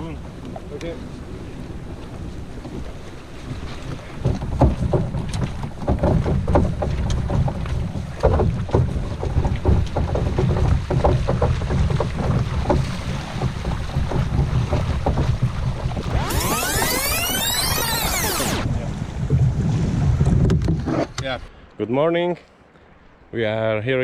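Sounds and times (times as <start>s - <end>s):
wind rumbling on microphone: 0.0s - 21.5s
rising and falling sweeping tones: 16.0s - 18.7s.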